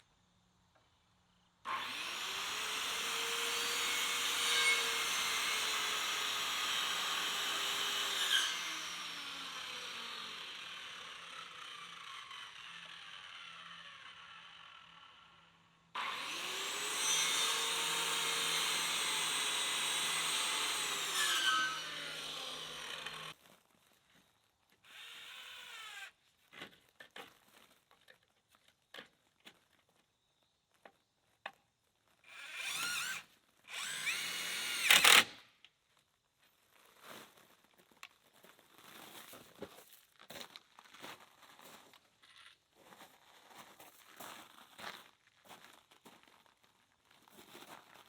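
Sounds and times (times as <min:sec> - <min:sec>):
electric power saw cutting wood: 0:01.7 - 0:23.4, 0:24.9 - 0:26.1, 0:32.3 - 0:35.4.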